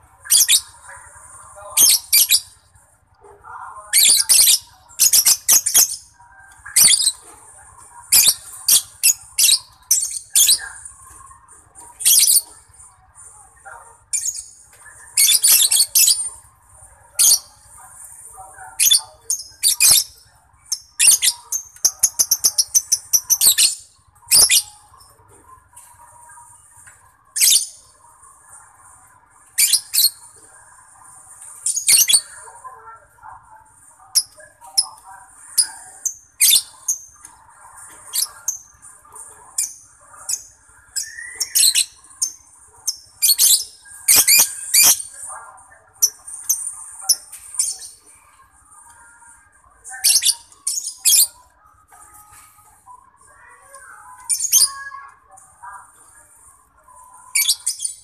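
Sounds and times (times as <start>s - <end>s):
bird chirping and squeaking: 0.2s - 0.9s, 1.8s - 2.7s, 3.9s - 12.8s, 14.1s - 16.5s, 17.2s - 17.6s, 18.8s - 25.2s, 27.2s - 27.9s, 31.6s - 32.4s, 34.1s - 45.2s, 49.9s - 51.4s, 57.3s - 58.0s
bird chattering: 0.2s - 2.7s, 3.9s - 26.0s.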